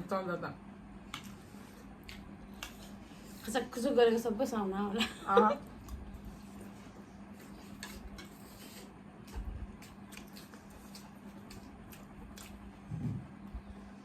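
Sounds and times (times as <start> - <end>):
steady low hum: 0.0 - 14.0
wet chewing: 7.4 - 12.9.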